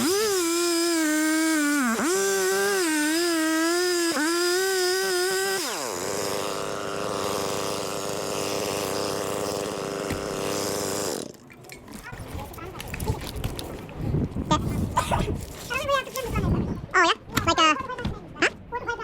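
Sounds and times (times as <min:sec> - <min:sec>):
chainsaw engine running: 0:00.0 - 0:11.4.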